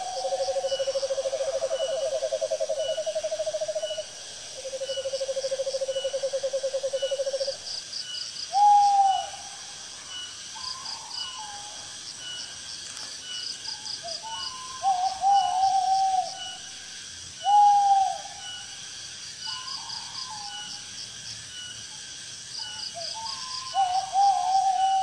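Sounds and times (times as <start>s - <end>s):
owl hooting: 0.0s - 7.6s, 8.5s - 9.5s, 14.2s - 16.6s, 17.4s - 18.6s, 23.0s - 25.0s
insects chirring: 0.0s - 25.0s.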